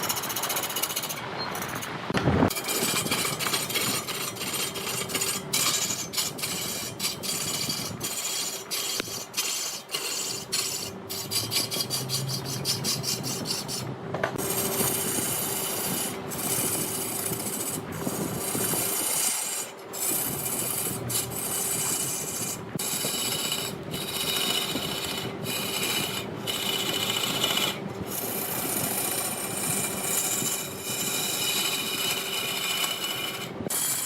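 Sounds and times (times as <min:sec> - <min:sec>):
lathe tool rasping wood: 0:00.0 - 0:01.9, 0:02.5 - 0:34.0
faint motor hum: 0:00.0 - 0:34.0.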